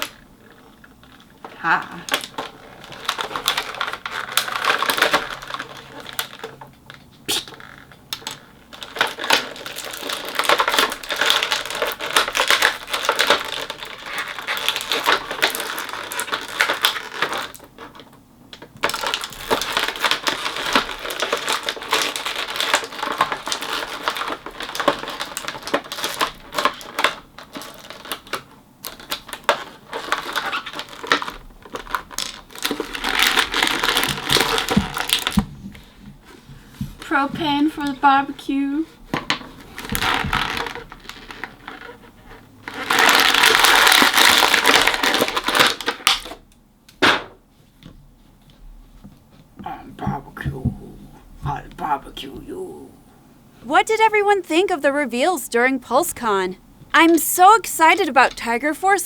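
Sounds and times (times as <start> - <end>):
plastic toy parts clicking and rattling: 0.0 - 35.4, 42.6 - 46.4.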